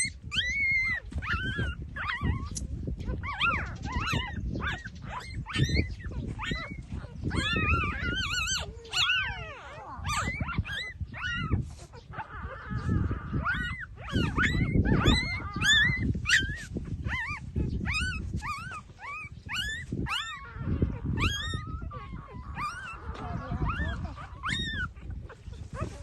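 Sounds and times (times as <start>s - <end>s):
puppies shuffling and suckling: 0.0s - 26.0s
puppies squeaking and whimpering: 0.0s - 26.0s.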